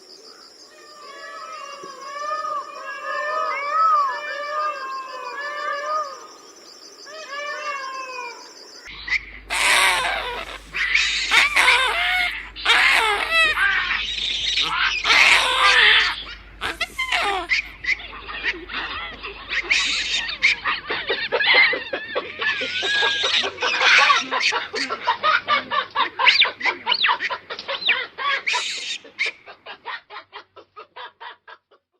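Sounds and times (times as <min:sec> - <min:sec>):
fowl clucking and chattering: 0:08.9 - 0:31.7.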